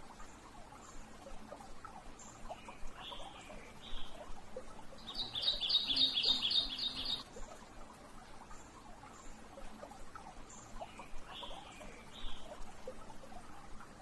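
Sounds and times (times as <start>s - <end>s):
birds chirping: 5.0s - 7.2s.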